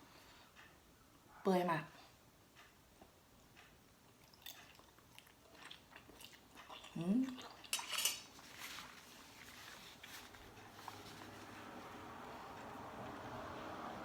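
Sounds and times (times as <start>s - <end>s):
spoon scraping a dish: 7.7s - 8.4s.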